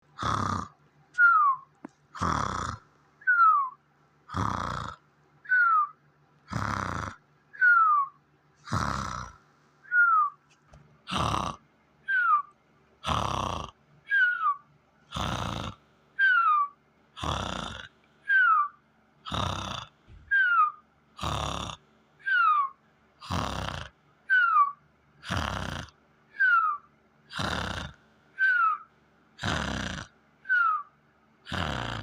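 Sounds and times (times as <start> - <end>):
rasping cartoon snore: 0.0 - 0.8, 2.1 - 2.9, 4.3 - 5.0, 6.4 - 7.2, 8.6 - 9.5, 11.0 - 11.6, 13.0 - 14.3, 15.1 - 15.9, 17.2 - 18.0, 19.2 - 20.0, 21.2 - 21.9, 23.2 - 24.0, 25.2 - 26.6, 27.3 - 28.7, 29.4 - 30.8, 31.4 - 32.0
falling whistle: 28.4 - 28.8, 30.5 - 30.8.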